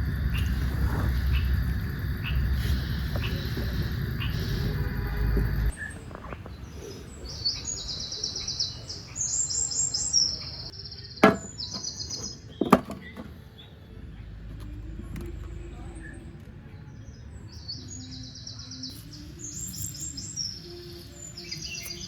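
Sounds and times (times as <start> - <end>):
low rumbling noise: 0.0 - 7.6
songbird trilling: 0.0 - 13.7
sharp knocks: 11.2 - 13.4.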